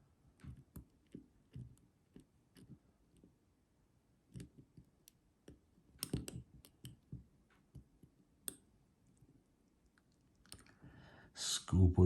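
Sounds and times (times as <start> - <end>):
lock pick clicking in padlock: 6.0 - 6.9.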